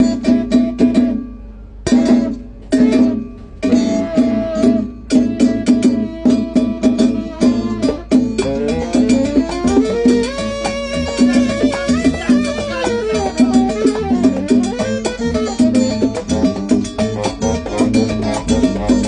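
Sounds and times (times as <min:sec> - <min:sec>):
salsa band playing: 0:00.0 - 0:19.0.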